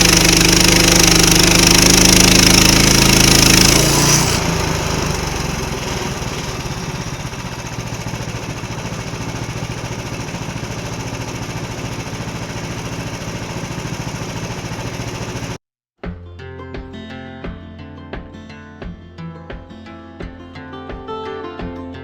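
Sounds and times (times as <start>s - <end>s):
small gasoline engine running: 0.0s - 15.6s.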